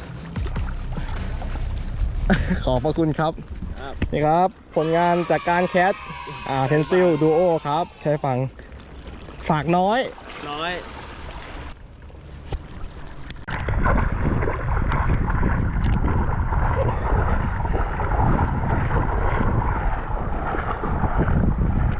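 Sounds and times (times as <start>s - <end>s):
wind buffeting microphone: 2.5s - 4.6s, 13.6s - 21.9s.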